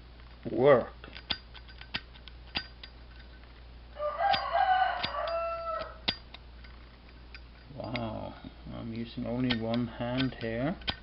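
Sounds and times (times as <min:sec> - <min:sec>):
rooster crowing: 0:03.9 - 0:06.2.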